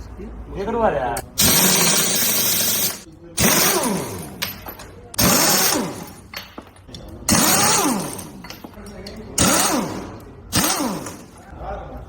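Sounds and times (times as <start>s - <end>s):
power tool bursts: 1.4s - 4.4s, 5.2s - 6.2s, 7.3s - 8.4s, 9.4s - 11.3s.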